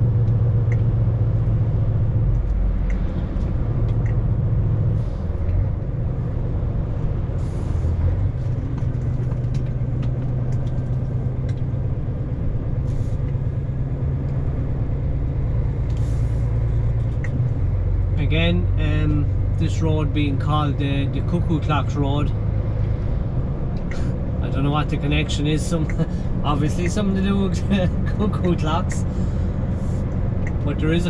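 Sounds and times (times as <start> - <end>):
road noise: 0.0 - 31.0
vehicle engine drone: 0.0 - 31.0.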